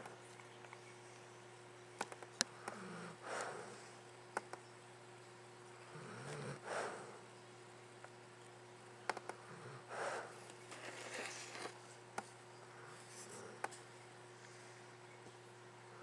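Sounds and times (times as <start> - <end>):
faint steady hum: 0.0 - 16.0
dog snoring softly: 5.8 - 7.3.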